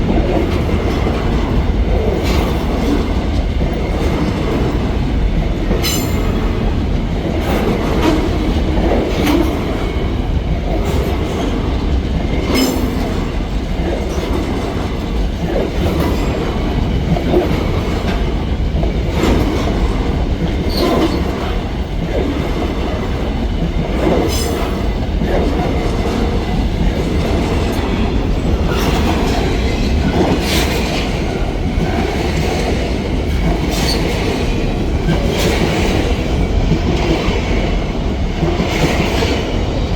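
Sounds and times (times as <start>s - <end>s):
freight train rumbling past: 0.0s - 39.9s
steel wheels squealing: 33.7s - 34.2s.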